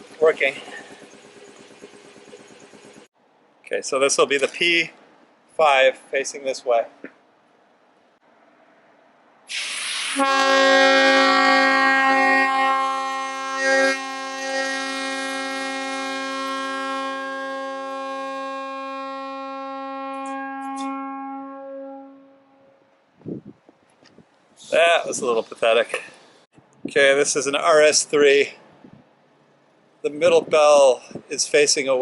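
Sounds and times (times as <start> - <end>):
air hiss: 9.5 - 10.3
locomotive air horn chord: 9.5 - 22.9.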